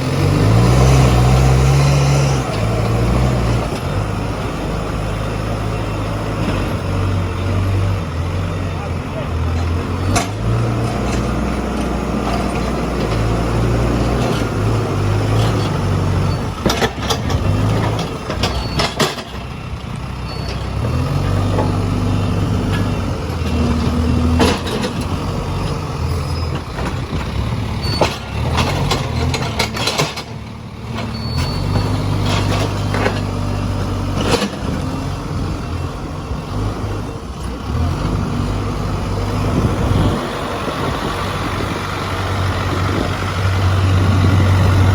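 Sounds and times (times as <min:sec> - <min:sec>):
diesel engine running: 0:00.0 - 0:44.9
sharp knocks and clanks: 0:16.6 - 0:19.5, 0:23.7 - 0:25.2, 0:26.5 - 0:33.4.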